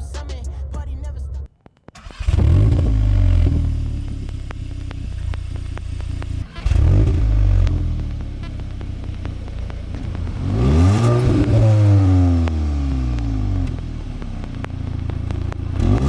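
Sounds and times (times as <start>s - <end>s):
car exhaust revving: 2.0s - 16.0s.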